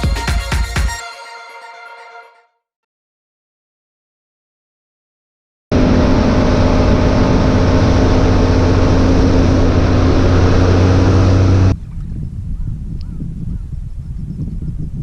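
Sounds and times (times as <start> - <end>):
outboard motor running: 5.7 - 12.0
rush of wind and water: 5.8 - 15.0.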